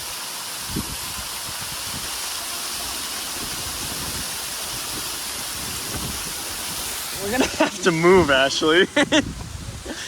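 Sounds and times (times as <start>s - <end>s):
heavy rain hissing: 0.0s - 10.0s
waterfall rushing: 0.0s - 10.0s.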